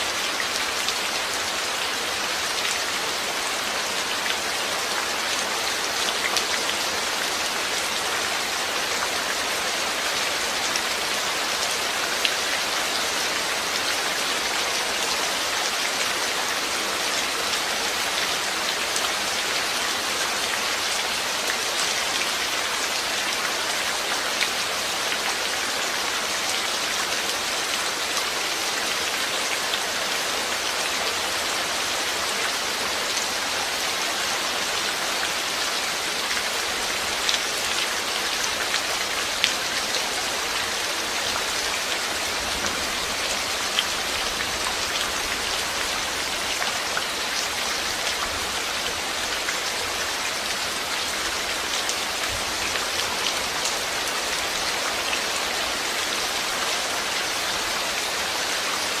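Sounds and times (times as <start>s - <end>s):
steady rain falling: 0.0s - 59.0s
raindrops hitting a surface: 34.6s - 59.0s.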